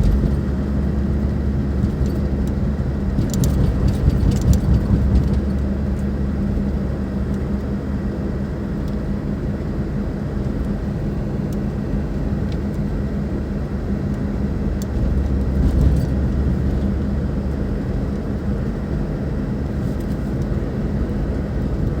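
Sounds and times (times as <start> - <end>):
car engine idling: 0.0 - 8.3, 13.2 - 20.2.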